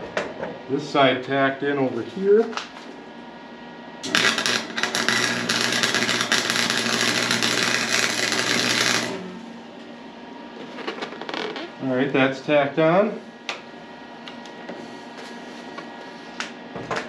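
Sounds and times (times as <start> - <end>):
welding arc crackling: 4.0 - 9.6.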